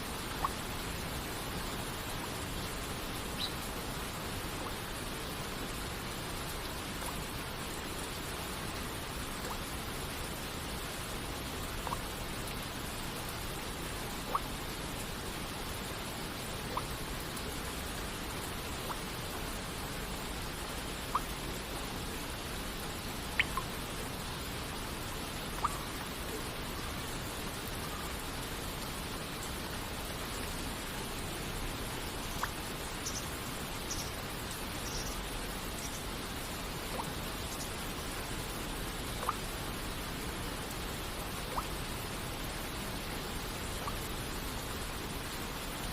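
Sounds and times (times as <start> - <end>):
rain hissing: 0.0 - 45.9
water droplets plinking: 23.4 - 23.7, 25.6 - 25.9.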